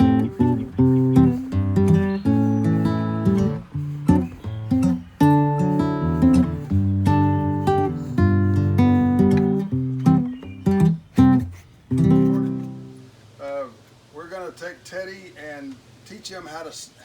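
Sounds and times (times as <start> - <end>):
acoustic guitar strumming and plucking: 0.0 - 13.2.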